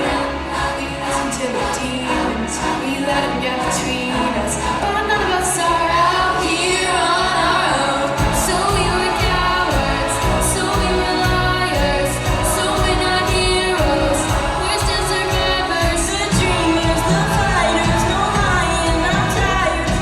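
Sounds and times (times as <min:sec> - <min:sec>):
backing track: 0:00.0 - 0:20.0
young voices singing pop song: 0:00.0 - 0:20.0
beat with bass and drums: 0:08.2 - 0:20.0.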